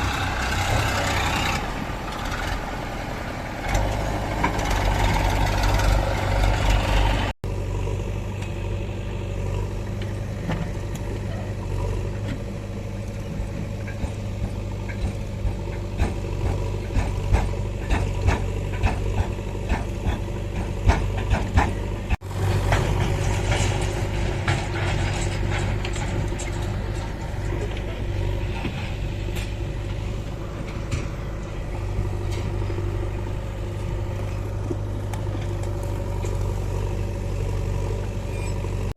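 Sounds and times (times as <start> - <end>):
diesel engine running: 0.0 - 38.9
sharp clanks and knocks: 9.9 - 37.0.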